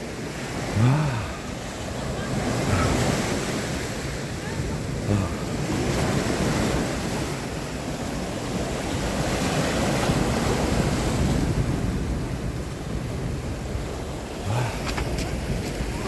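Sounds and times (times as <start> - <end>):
sea waves breaking: 0.0 - 16.0
wind buffeting microphone: 7.8 - 16.0.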